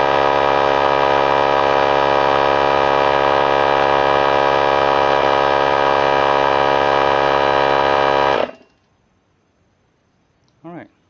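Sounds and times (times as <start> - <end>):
air compressor running: 0.0 - 8.7.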